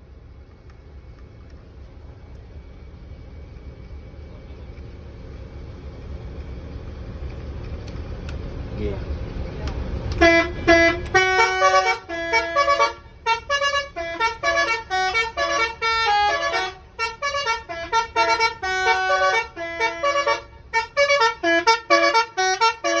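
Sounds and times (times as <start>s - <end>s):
bus horn playing a fast tune: 10.1s - 23.0s.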